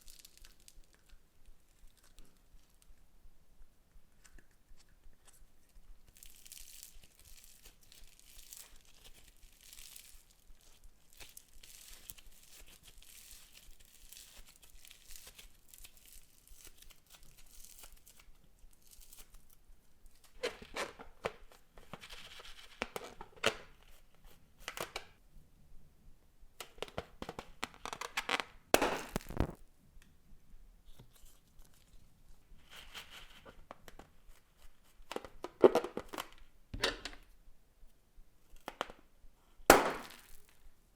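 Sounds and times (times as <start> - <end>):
slime crackling and popping: 0.0 - 2.9, 6.1 - 19.4, 26.7 - 29.6, 39.7 - 40.6.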